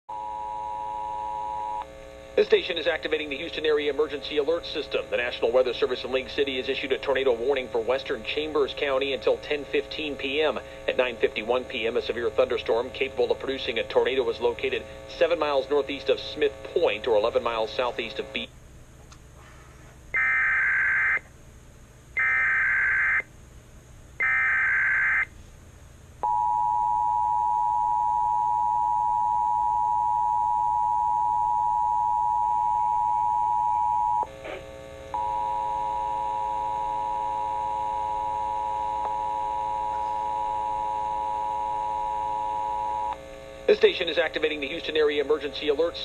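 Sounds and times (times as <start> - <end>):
harsh distorted buzz: 0.1 - 18.6, 19.4 - 21.3, 22.1 - 23.3, 32.7 - 46.0
steady attention tone: 22.1 - 23.3, 26.2 - 46.0.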